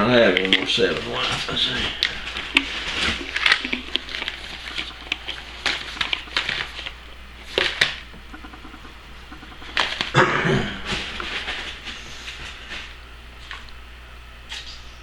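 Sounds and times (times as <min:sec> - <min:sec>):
packaging crinkling: 0:00.2 - 0:08.0.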